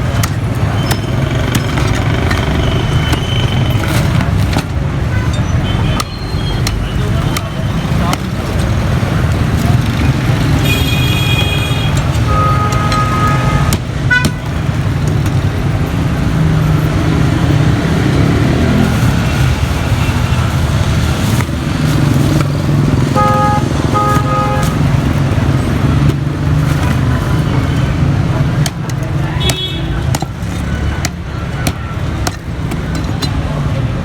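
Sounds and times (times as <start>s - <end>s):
street traffic: 0.0s - 34.0s
vehicle horns honking: 10.5s - 14.6s, 22.9s - 25.6s, 29.3s - 32.2s.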